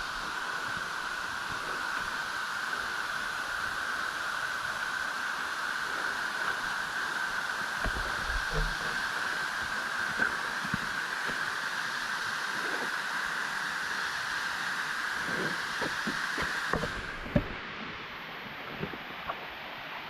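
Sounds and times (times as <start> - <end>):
faint low bumps: 7.8 - 9.0.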